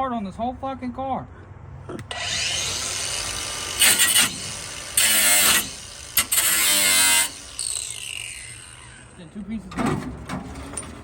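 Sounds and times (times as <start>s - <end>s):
angle grinder cutting sheet metal: 2.1s - 9.2s
angle grinder whining: 2.1s - 9.2s.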